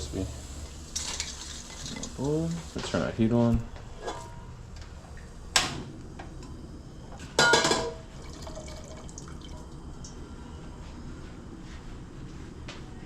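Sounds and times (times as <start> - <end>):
steady low hum: 0.0 - 13.0
oil pouring into pan: 8.2 - 9.7.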